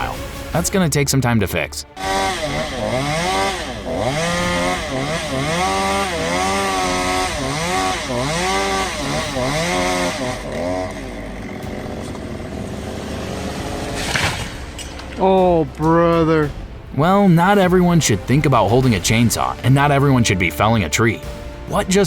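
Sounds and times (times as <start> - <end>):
chainsaw revving while cutting: 2.0 - 14.8.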